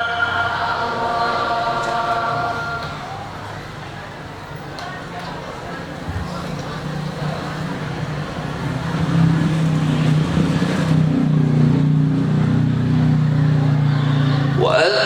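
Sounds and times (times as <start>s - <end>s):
man reciting melodically: 14.6s - 15.0s.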